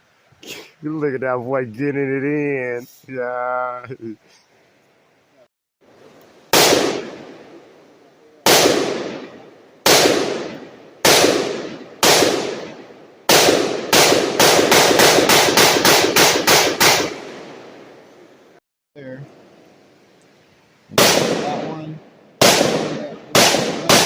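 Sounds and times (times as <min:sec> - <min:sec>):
gunshots with echo: 0:06.5 - 0:07.5, 0:08.4 - 0:17.7, 0:20.9 - 0:24.0.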